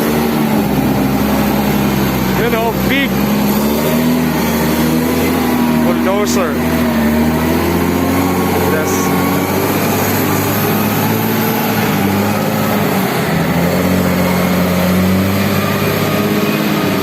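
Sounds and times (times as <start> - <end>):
bulldozer diesel engine running: 0.0 - 17.0.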